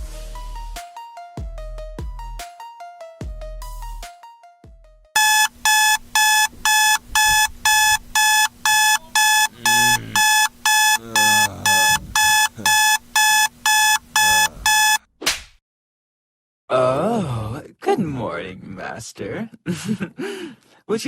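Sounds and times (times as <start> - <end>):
alarm clock beeping: 5.2 - 15.0
person groaning: 9.5 - 10.4, 11.0 - 12.8.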